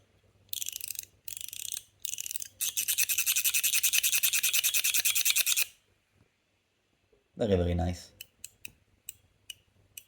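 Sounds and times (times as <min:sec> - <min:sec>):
metal fidget slider clicking: 0:00.5 - 0:05.7.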